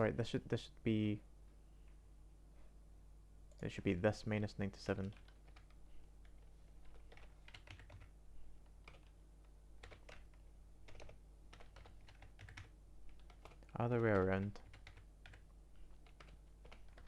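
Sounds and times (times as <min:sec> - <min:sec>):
faint keyboard typing: 0:03.4 - 0:17.0.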